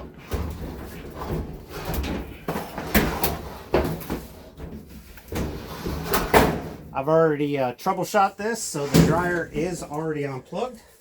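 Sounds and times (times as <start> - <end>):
clothes dryer scraping and bumping: 0.0 - 6.9, 8.8 - 9.9.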